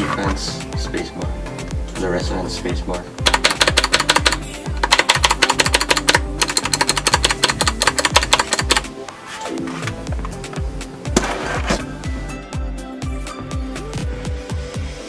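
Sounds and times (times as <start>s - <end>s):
keyboard spacebar clicking: 3.2s - 8.9s.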